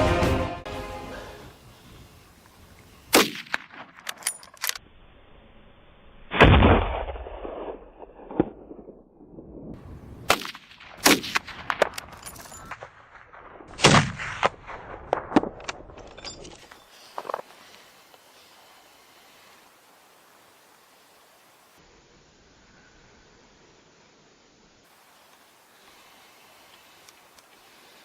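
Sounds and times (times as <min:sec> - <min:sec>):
gunshots with rumbling echo: 0:06.3 - 0:12.0, 0:12.8 - 0:16.0.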